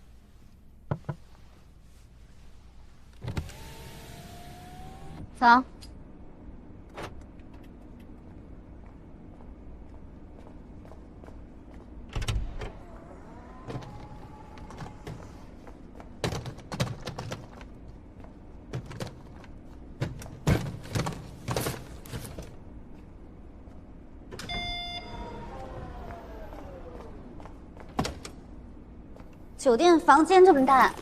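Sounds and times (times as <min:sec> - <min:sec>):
electric window motor: 0:03.2 - 0:05.3, 0:12.4 - 0:15.6, 0:24.5 - 0:28.4
short ringing tone: 0:24.5 - 0:25.3.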